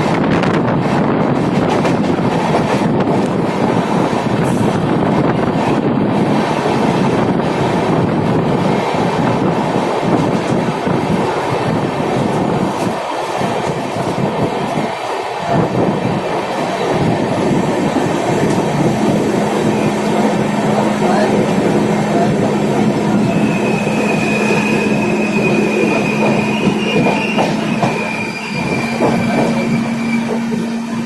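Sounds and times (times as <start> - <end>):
train rumble and wheel clatter: 0.0 - 31.0
high wheel squeal: 22.1 - 31.0.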